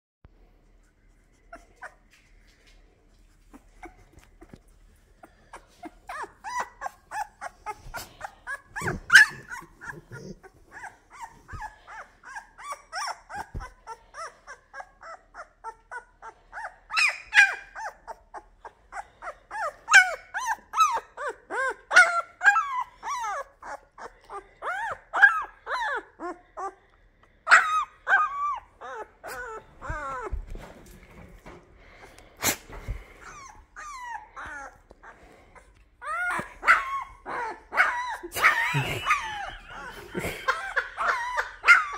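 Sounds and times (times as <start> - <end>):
puppy squeaking and whining: 1.0 - 2.6, 3.2 - 31.4, 32.4 - 41.9.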